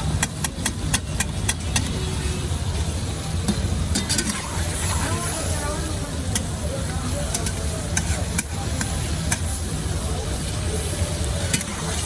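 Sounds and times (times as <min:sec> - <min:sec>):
food sizzling in a pan: 0:00.0 - 0:12.0
metal spatula clinking on pan: 0:03.5 - 0:04.9, 0:07.3 - 0:09.6.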